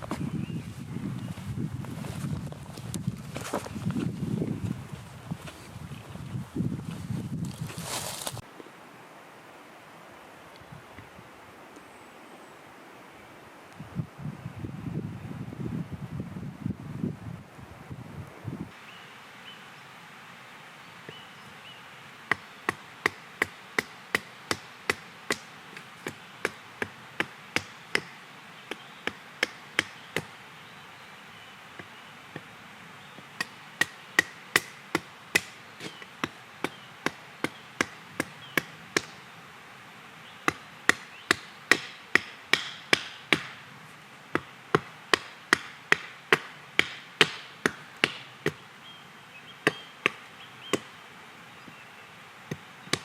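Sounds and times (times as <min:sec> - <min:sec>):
axe chopping wood: 0:22.3 - 0:28.1, 0:28.7 - 0:30.3, 0:33.4 - 0:39.2, 0:40.4 - 0:43.6, 0:44.3 - 0:48.6.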